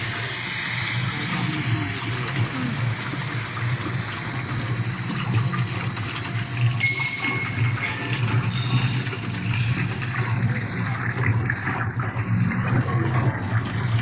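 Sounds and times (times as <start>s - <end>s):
high steady whine: 0.0s - 4.8s
water churning and sloshing: 0.0s - 14.0s.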